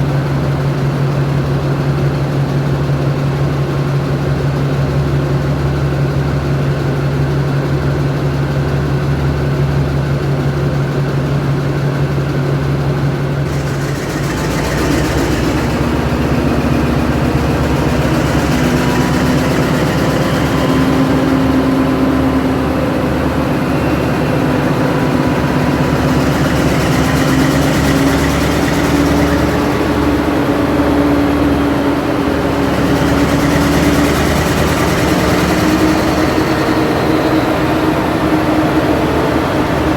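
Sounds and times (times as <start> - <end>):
diesel locomotive engine idling: 8.0 - 39.9.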